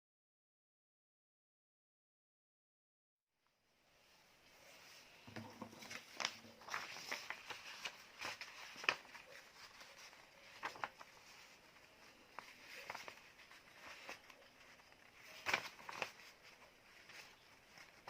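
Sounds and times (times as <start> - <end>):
paper rustling and crinkling: 4.5 - 18.0.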